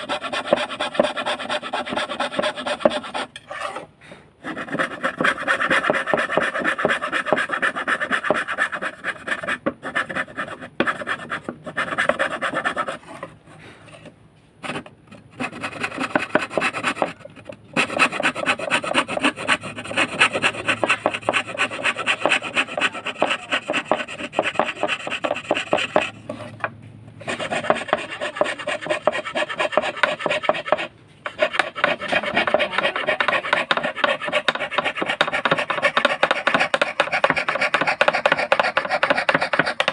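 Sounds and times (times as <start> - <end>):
fretsaw cutting wood: 27.2 - 39.9.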